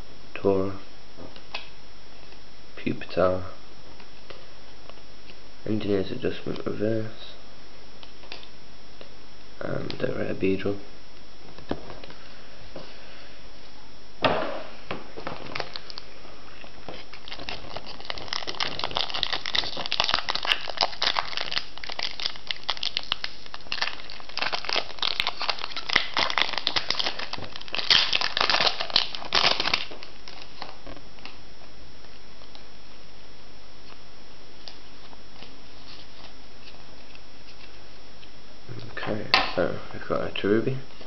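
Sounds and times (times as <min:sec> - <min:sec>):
foil wrapper crinkling: 0:15.1 - 0:31.4.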